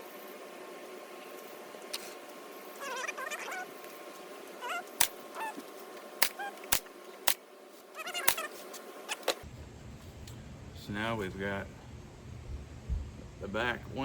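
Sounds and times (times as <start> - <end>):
hammer driving nails into wood: 6.2 - 7.4.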